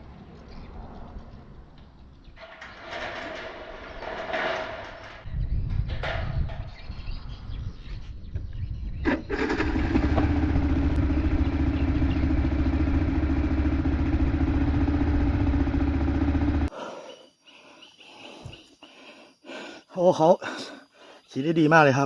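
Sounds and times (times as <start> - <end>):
motorcycle engine running: 9.1 - 16.7.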